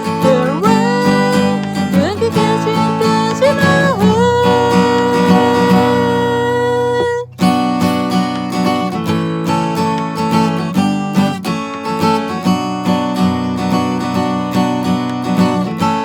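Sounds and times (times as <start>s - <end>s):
woman singing: 0.0s - 7.5s
acoustic guitar strumming: 0.0s - 16.0s.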